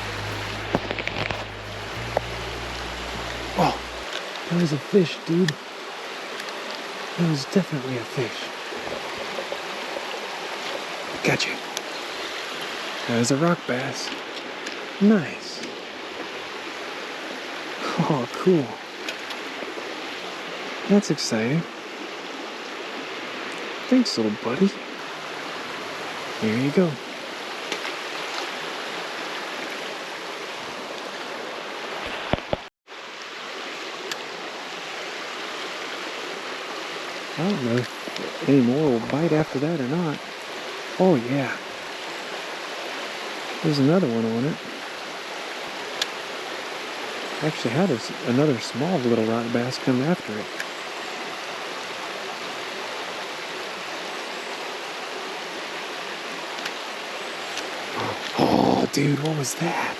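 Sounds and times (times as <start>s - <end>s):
low thumps: 0.0s - 4.1s
creek water flowing: 0.0s - 59.9s.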